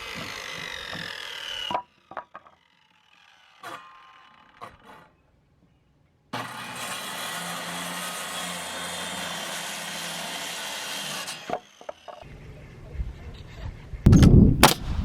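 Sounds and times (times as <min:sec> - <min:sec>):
power saw cutting lumber: 0:00.0 - 0:05.3, 0:06.4 - 0:12.2.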